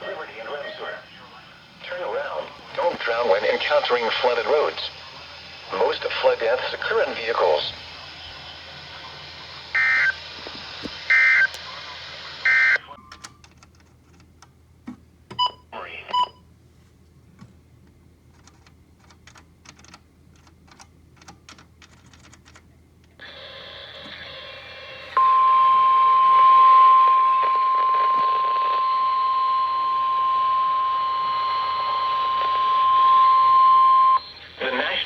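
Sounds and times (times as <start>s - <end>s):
radio hiss: 0.0s - 13.0s, 23.2s - 35.0s
faint radio clicks: 2.4s - 5.0s
steady alarm tone: 9.7s - 10.2s, 11.1s - 11.5s, 12.4s - 12.8s, 25.2s - 34.5s.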